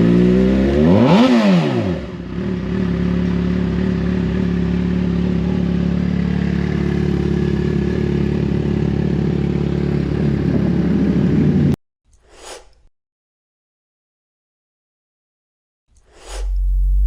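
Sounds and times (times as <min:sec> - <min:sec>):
motorcycle engine running: 0:00.0 - 0:11.8
faint rushing sound: 0:16.1 - 0:17.0.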